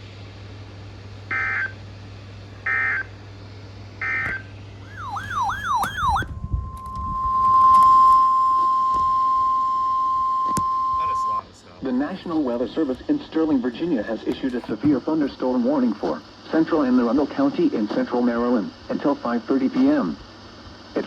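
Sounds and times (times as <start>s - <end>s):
steady warning alarm tone: 1.3s - 1.8s, 2.6s - 3.2s, 4.0s - 11.4s
warbling digital data tones: 4.0s - 11.4s
quick falling electronic sweep: 4.2s - 8.3s.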